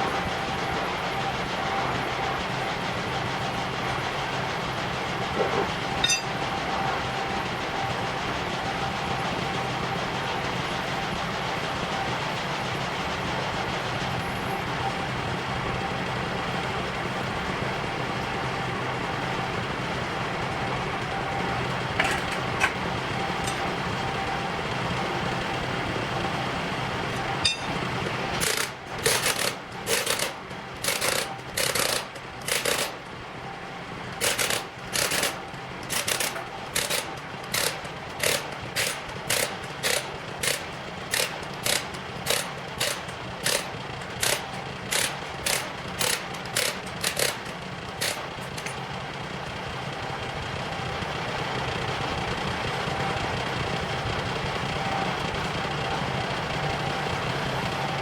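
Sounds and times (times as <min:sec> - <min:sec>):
steady engine hum: 0:00.0 - 0:58.0
air impact wrench bursts: 0:28.4 - 0:33.0, 0:34.2 - 0:48.8.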